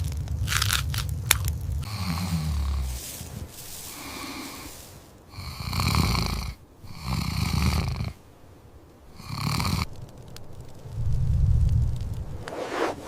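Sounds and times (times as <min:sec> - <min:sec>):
heavy rasping snore-like breaths: 0:01.8 - 0:08.2, 0:09.1 - 0:09.9.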